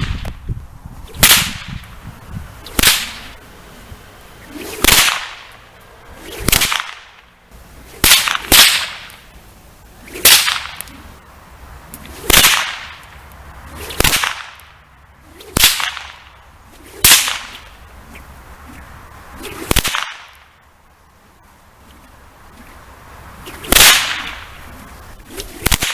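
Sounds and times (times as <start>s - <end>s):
whip cracking: 0.0s - 0.4s, 1.1s - 2.0s, 2.6s - 3.4s, 4.4s - 5.6s, 6.2s - 7.3s, 7.9s - 9.3s, 10.0s - 11.1s, 12.0s - 20.5s, 23.4s - 25.9s
whip lash swishing: 1.1s - 2.0s, 2.6s - 3.4s, 4.4s - 5.6s, 6.2s - 7.3s, 7.9s - 9.3s, 10.0s - 11.1s, 12.0s - 20.5s, 23.4s - 25.9s.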